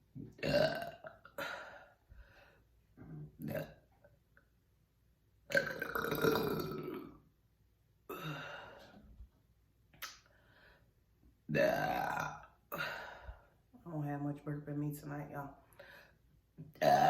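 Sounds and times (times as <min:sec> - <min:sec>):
person burping loudly: 0:00.2 - 0:01.9, 0:03.0 - 0:03.9, 0:05.5 - 0:07.2, 0:08.1 - 0:08.9, 0:11.5 - 0:13.2, 0:16.7 - 0:17.0.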